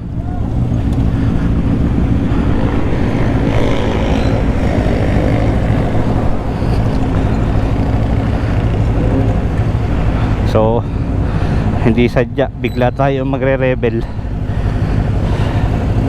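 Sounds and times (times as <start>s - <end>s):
motorcycle engine running: 0.0s - 11.8s.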